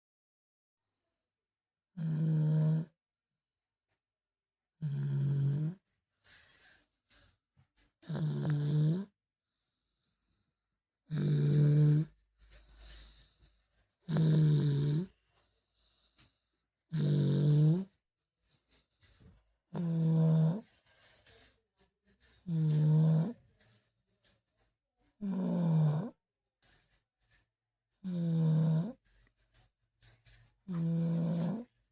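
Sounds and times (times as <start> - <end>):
child snoring: 2.0 - 3.0, 4.8 - 5.8, 8.0 - 9.1, 11.1 - 12.2, 14.1 - 15.1, 16.9 - 17.9, 19.8 - 20.6, 22.5 - 23.4, 25.2 - 26.2, 28.0 - 29.0, 30.7 - 31.7.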